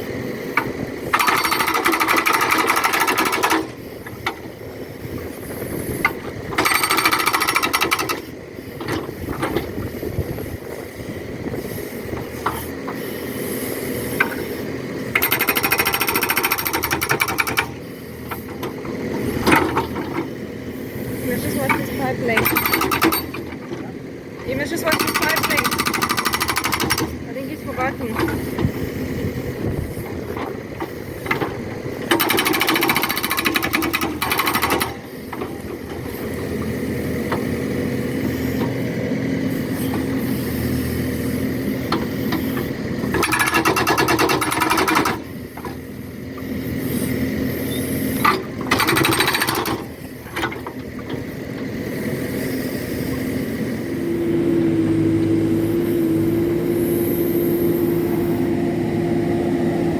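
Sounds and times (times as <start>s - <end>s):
diesel engine running: 0.0s - 59.9s
hydraulic rock breaker hammering: 0.5s - 4.5s, 6.0s - 9.9s, 15.1s - 20.3s, 21.4s - 28.9s, 29.6s - 38.8s, 41.8s - 52.0s.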